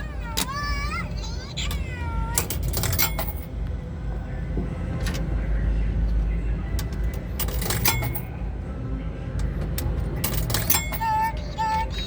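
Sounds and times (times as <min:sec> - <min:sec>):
ride motor low rumble: 0:00.0 - 0:12.0
sharp metallic clinks: 0:07.4 - 0:08.3.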